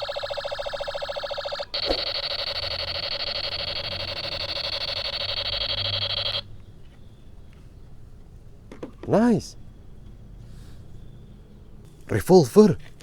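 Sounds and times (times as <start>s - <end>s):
toy gun electronic shooting: 0.0s - 6.4s.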